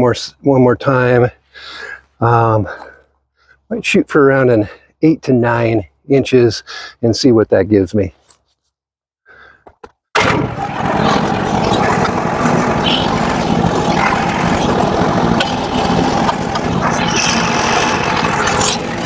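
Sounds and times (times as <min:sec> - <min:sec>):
engine running: 0:10.2 - 0:19.0.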